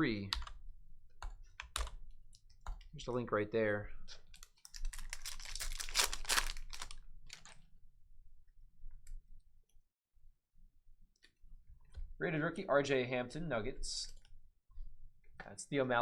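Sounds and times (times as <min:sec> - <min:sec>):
card pack wrapping tearing: 0:04.6 - 0:07.6.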